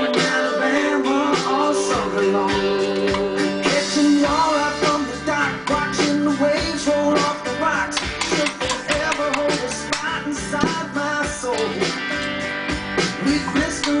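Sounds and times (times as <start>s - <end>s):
steady beat: 0.0s - 7.4s
person singing: 0.0s - 12.2s, 13.0s - 14.0s
guitar: 0.0s - 14.0s.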